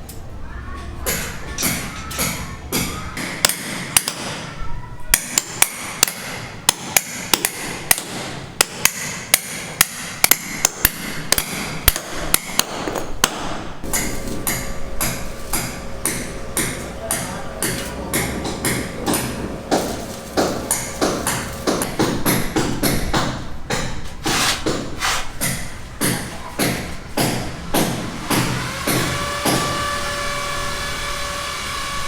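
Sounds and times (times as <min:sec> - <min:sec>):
sharp rhythmic knocks: 0:01.1 - 0:04.5, 0:05.2 - 0:24.0.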